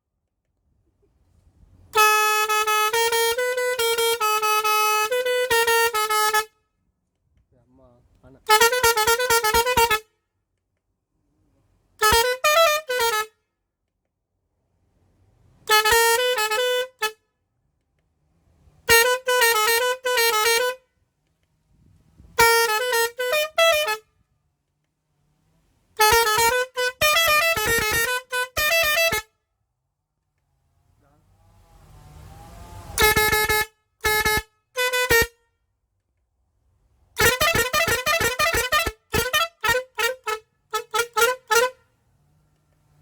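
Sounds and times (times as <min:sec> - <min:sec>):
musical bus horn: 0:01.9 - 0:06.8, 0:08.3 - 0:10.2, 0:12.0 - 0:13.5, 0:15.6 - 0:17.4, 0:18.8 - 0:21.0, 0:22.3 - 0:24.3, 0:26.0 - 0:29.5, 0:32.0 - 0:35.6, 0:37.2 - 0:42.0.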